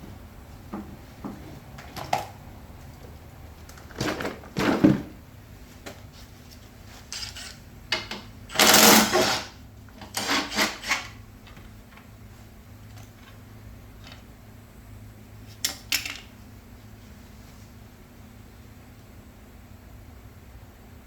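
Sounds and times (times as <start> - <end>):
scraping and rattling on mower wheel: 7.0 - 7.7.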